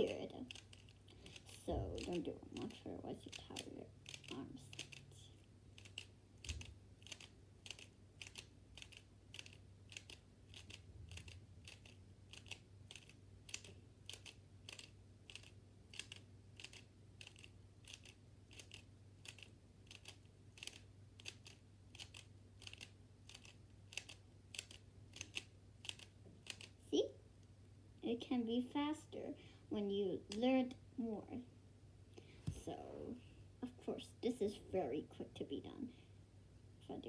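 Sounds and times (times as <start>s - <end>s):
puzzle cube clicking: 3.4s - 5.1s, 5.8s - 26.8s.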